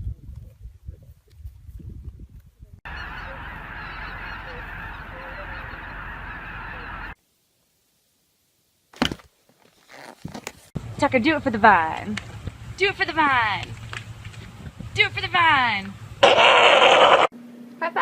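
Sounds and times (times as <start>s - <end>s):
chorus of birds calling: 2.9s - 7.2s.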